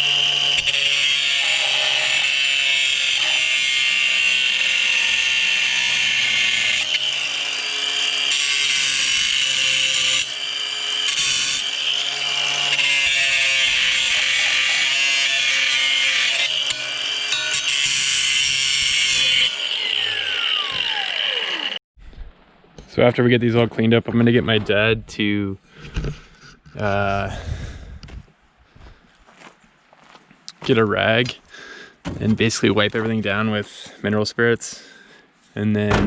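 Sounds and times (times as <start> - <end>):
angle grinder grinding steel: 0.0 - 21.8.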